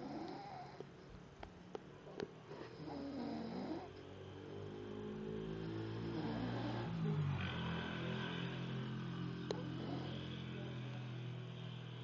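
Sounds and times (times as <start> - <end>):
snoring: 0.0 - 0.9, 2.5 - 4.0, 5.5 - 7.7, 9.5 - 10.4
steady low hum: 0.0 - 12.0.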